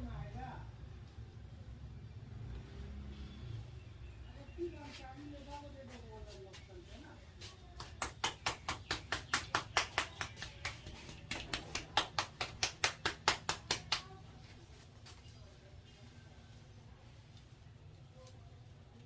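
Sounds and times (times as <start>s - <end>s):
rhythmic hand slaps on head: 7.7s - 14.2s.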